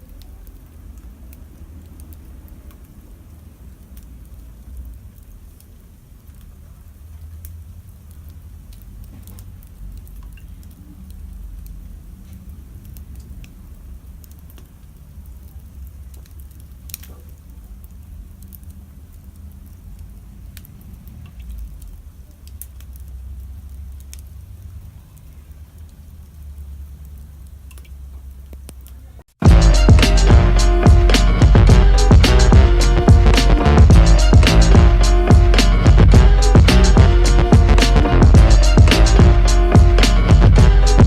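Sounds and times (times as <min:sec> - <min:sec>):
campfire crackling: 0:00.0 - 0:41.0
low rumble: 0:29.4 - 0:41.0.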